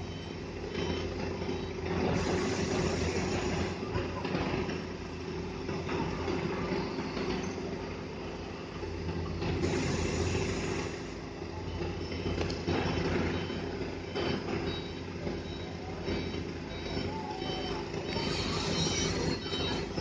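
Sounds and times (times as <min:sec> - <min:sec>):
diesel engine running: 0:00.0 - 0:20.0
thin high squeals: 0:17.0 - 0:20.0.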